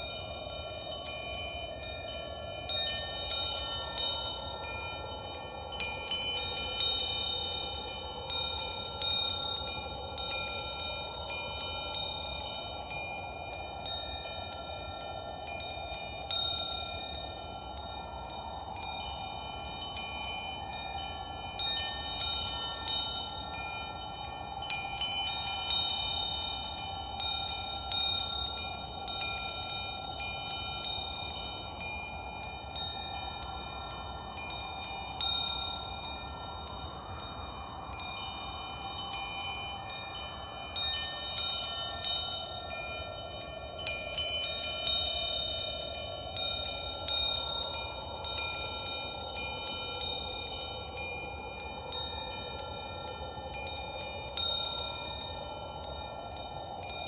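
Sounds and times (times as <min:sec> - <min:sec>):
metal wind chimes ringing: 0:00.0 - 0:57.0
soft steady hiss: 0:00.0 - 0:57.0.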